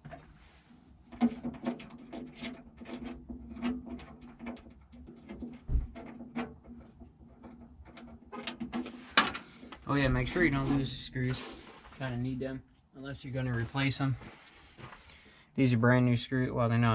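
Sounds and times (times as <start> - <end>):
dull thump: 5.6 - 6.0.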